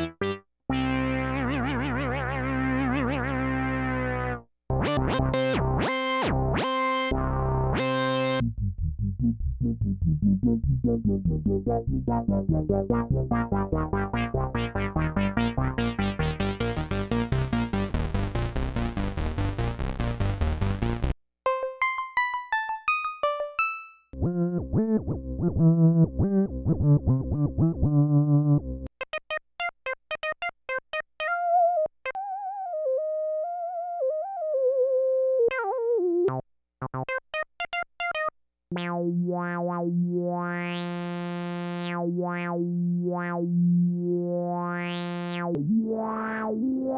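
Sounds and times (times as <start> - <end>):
low synth bass notes: 0.0 - 23.6, 24.2 - 28.9, 38.7 - 46.9
synthesizer arpeggio: 5.3 - 7.1, 16.4 - 24.1, 38.8 - 42.5, 44.0 - 46.9.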